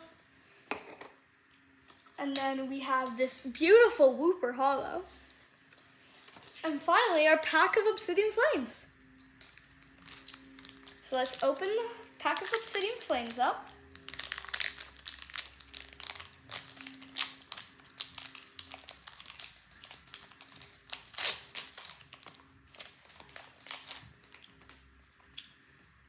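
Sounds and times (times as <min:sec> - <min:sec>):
foil wrapper crinkling: 0:09.4 - 0:25.2.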